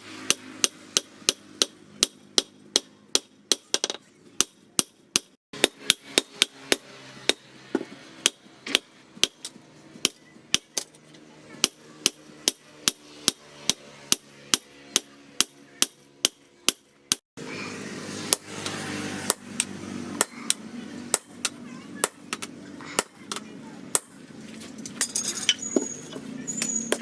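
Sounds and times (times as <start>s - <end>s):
hammer striking steel on anvil: 0.2s - 11.0s, 11.6s - 17.2s, 19.3s - 22.4s, 23.0s - 24.3s.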